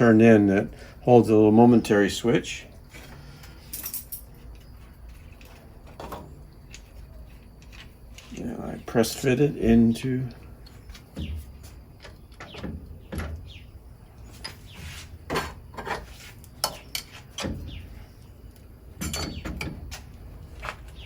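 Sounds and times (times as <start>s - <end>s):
metal parts clicking and clinking: 3.4s - 9.4s, 18.5s - 20.2s.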